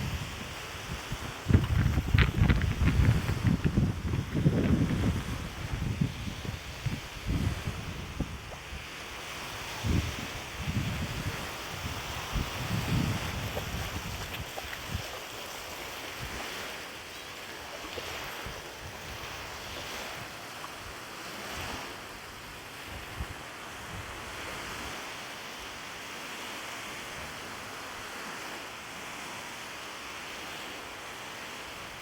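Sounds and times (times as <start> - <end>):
wind buffeting microphone: 0.0 - 15.1
waves washing on shore: 0.0 - 32.0.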